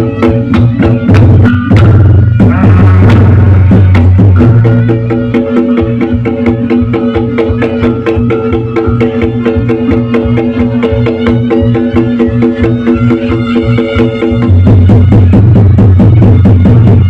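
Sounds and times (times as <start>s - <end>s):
drums beaten in fast rhythm: 0.0s - 17.0s.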